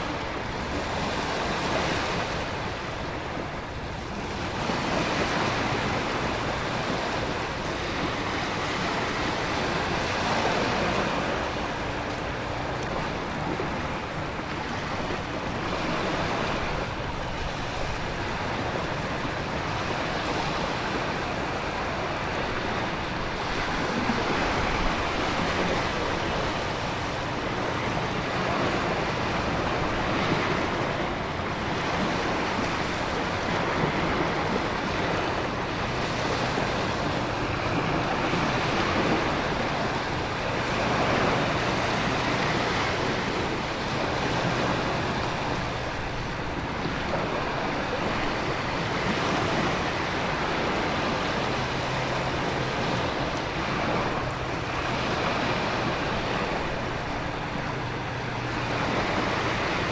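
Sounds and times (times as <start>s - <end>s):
ocean waves surging: 0.0s - 59.9s
wind: 0.0s - 59.9s.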